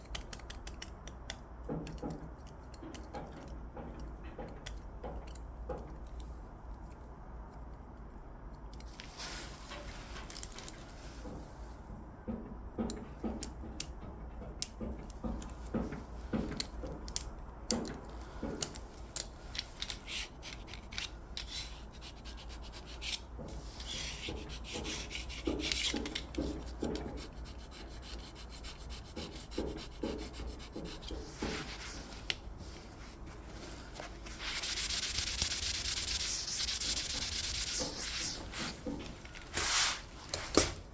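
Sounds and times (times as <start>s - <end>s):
light clicks and taps: 0.0s - 9.1s
scrubbing on floor: 30.0s - 40.8s
sanding strokes on wood floor: 34.3s - 38.8s, 39.5s - 40.1s.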